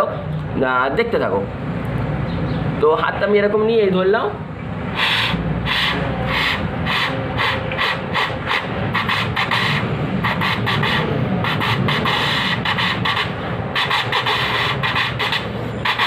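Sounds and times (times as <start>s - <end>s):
person imitating a train with mouth: 4.9s - 16.0s.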